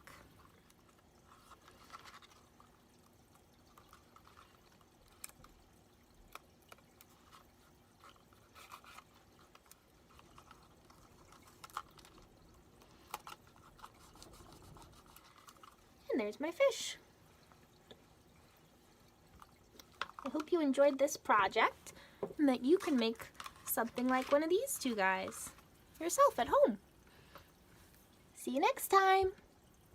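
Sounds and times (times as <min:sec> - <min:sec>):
tape rustling: 0:00.0 - 0:15.9, 0:22.6 - 0:26.6.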